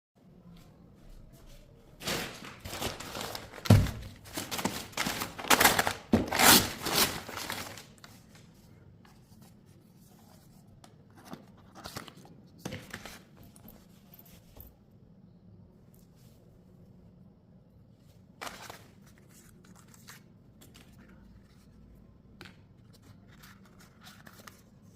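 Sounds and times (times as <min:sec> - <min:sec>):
packaging rustling and tearing: 0:02.0 - 0:08.2.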